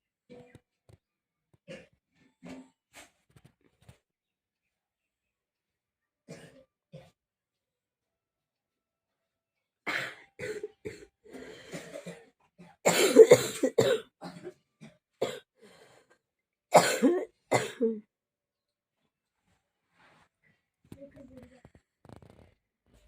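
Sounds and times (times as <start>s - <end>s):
person coughing: 9.9s - 12.3s, 12.9s - 14.6s, 15.2s - 15.5s, 16.7s - 18.0s.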